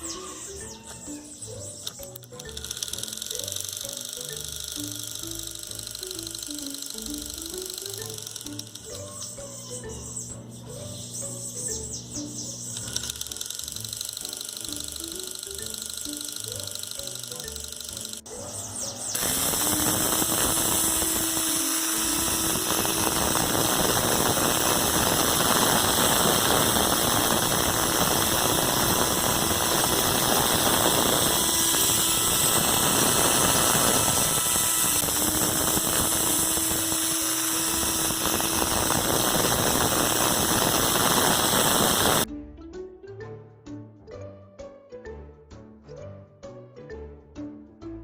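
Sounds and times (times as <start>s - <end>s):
pressure washer running: 18.9s - 42.3s.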